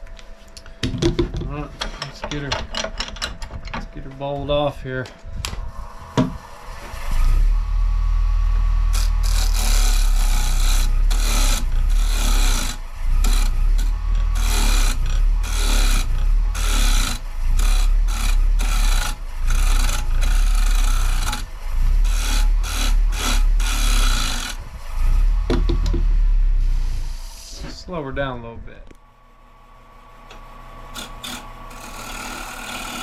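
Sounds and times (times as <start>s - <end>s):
lathe motor hum: 5.6s - 27.3s, 29.6s - 33.0s
turning tool scraping wood: 8.9s - 28.0s, 30.3s - 33.0s.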